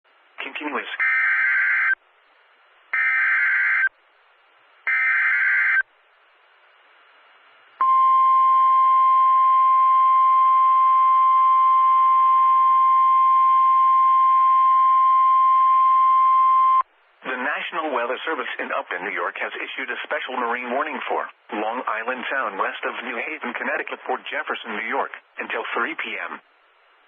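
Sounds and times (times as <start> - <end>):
steady warning alarm tone: 1.0 - 2.0, 3.0 - 3.9, 4.9 - 5.8.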